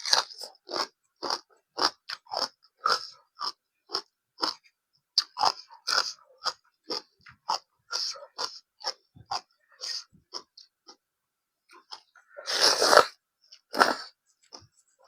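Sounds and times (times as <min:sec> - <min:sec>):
wet crunchy chewing: 0:00.0 - 0:11.0.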